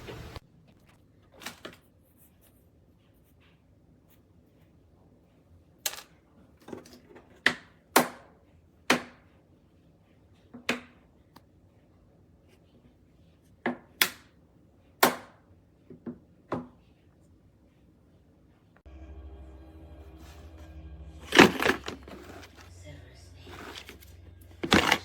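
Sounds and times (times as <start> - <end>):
plastic tool box clacking: 24.6 - 25.0.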